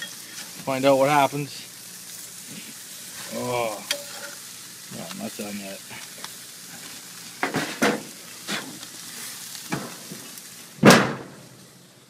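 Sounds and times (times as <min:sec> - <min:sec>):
burgers sizzling: 0:00.0 - 0:12.0
sharp scrapes or knocks: 0:07.4 - 0:08.8.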